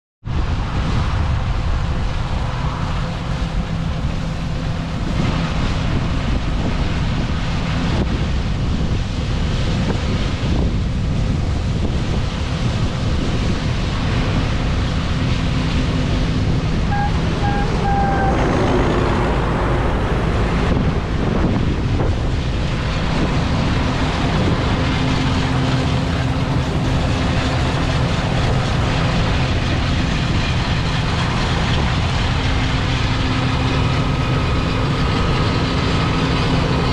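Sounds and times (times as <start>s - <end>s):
combine engine hum: 0.2s - 36.9s
steady rushing noise: 0.2s - 36.9s
short beeps: 16.9s - 18.4s.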